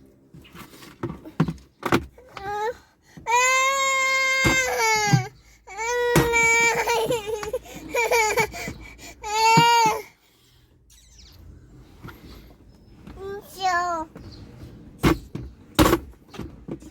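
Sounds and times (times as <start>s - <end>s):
young child crying: 2.4s - 10.1s.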